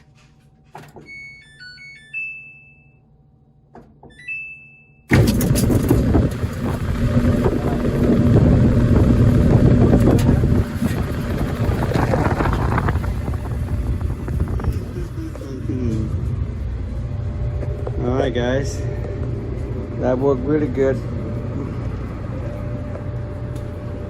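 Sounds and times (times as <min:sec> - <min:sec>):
control panel beep: 0:04.1 - 0:05.1
clothes dryer running: 0:05.1 - 0:24.0.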